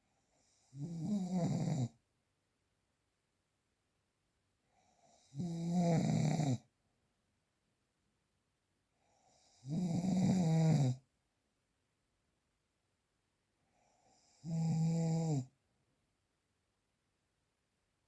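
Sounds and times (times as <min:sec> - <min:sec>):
loud low-pitched snores: 0:00.4 - 0:02.0, 0:05.0 - 0:06.6, 0:09.3 - 0:11.0, 0:14.1 - 0:15.5.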